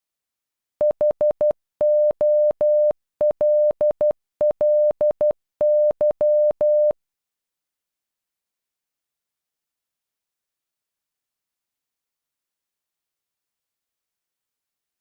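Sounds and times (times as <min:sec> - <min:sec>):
morse code beeps: 0:00.8 - 0:07.0.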